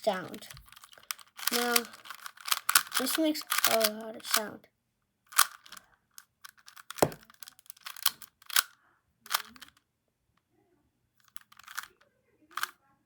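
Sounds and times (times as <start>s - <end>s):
puzzle cube plastic clacks: 0.0s - 4.5s, 5.3s - 9.8s, 11.2s - 11.9s, 12.5s - 12.8s.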